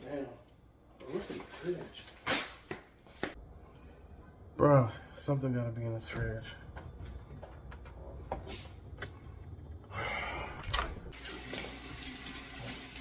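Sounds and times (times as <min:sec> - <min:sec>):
water running steadily: 0:11.1 - 0:13.0.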